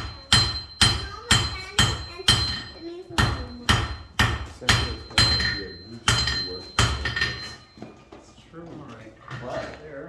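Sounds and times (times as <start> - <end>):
hammer striking iron on anvil: 0.0 - 7.7.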